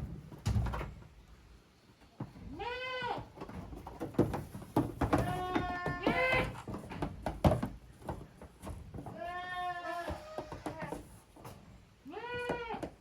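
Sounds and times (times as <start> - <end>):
goat kids bleating: 2.4 - 3.4, 5.1 - 6.8, 9.0 - 11.1, 12.0 - 13.0.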